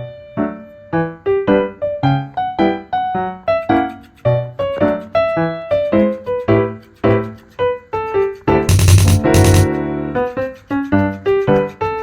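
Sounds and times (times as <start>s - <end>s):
bouncy keyboard tune: 8.7s - 9.7s
loud percussive accent: 8.7s - 9.7s.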